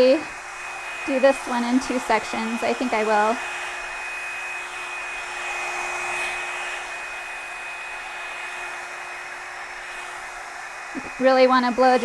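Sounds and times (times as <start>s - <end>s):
hot-air brush blowing with whine: 0.0s - 12.0s.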